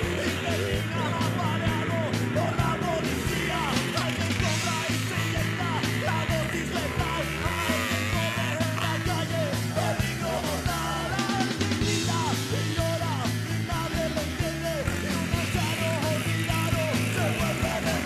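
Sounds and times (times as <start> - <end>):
rock music with singing: 0.0 - 18.0.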